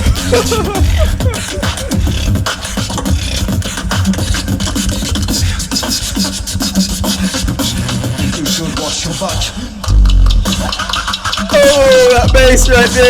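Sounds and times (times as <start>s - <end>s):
deep vocal bass: 0.0s - 3.7s, 7.7s - 13.0s
beatboxing drum hits: 0.0s - 13.0s
sliding pitched vocal line: 0.0s - 13.0s.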